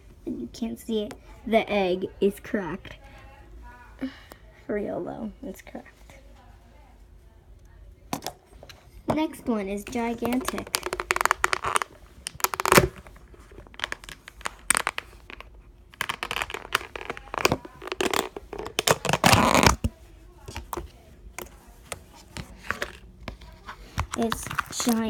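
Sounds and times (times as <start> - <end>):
hands squishing slime: 9.9 - 25.0.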